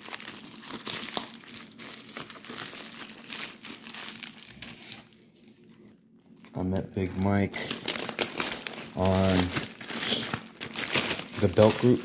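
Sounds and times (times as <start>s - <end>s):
packaging crinkling and rustling: 0.0s - 12.0s.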